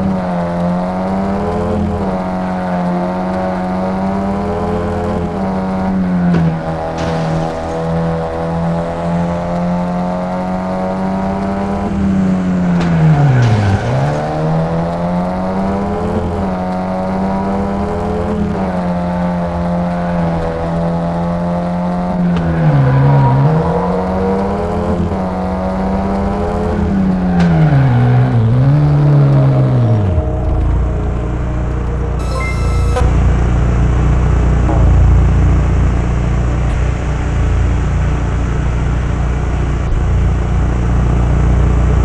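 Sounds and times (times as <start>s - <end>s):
vehicle engine running: 28.8s - 42.0s.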